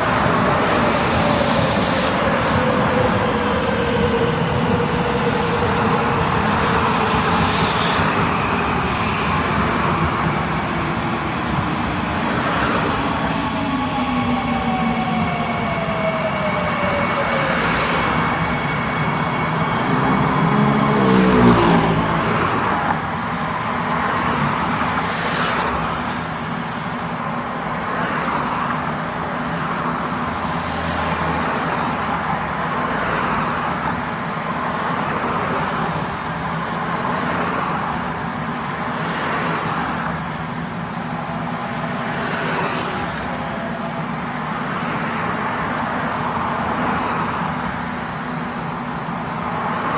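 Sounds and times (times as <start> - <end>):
metro train motor whine: 0.0 - 23.8
train rumble and hiss: 0.0 - 49.9.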